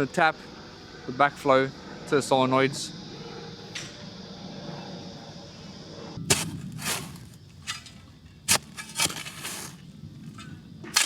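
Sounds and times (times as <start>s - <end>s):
shovel digging into soil: 6.3s - 9.8s.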